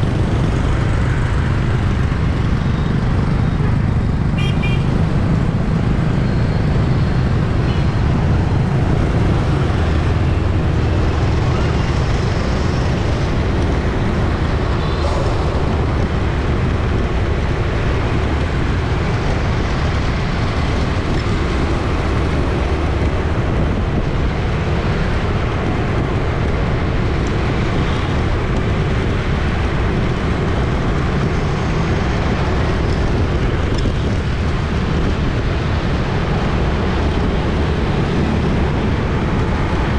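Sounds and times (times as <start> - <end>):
traffic rumble: 0.0 - 39.9.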